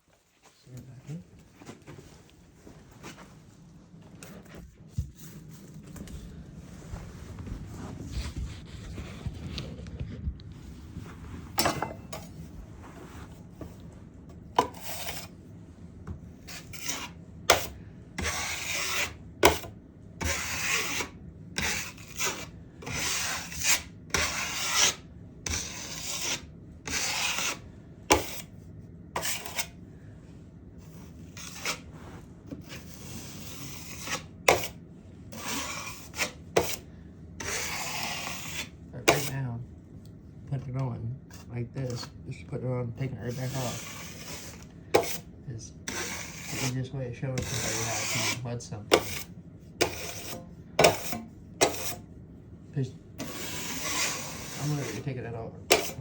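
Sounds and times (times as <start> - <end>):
drywall knife scraping mud: 14.6 - 15.4, 16.4 - 28.5, 29.2 - 29.8, 30.9 - 39.4, 43.2 - 46.8, 47.4 - 52.0, 53.2 - 56.0.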